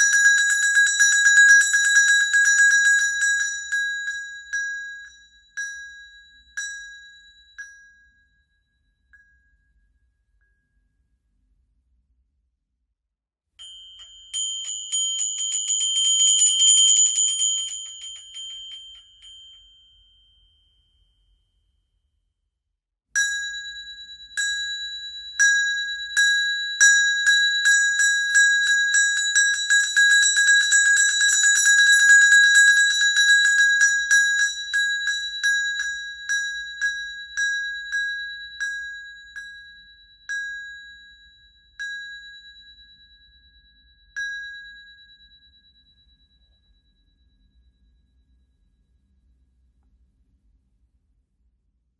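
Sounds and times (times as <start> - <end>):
hand bell ringing: 0.0 - 9.6, 13.6 - 20.8, 23.2 - 47.7.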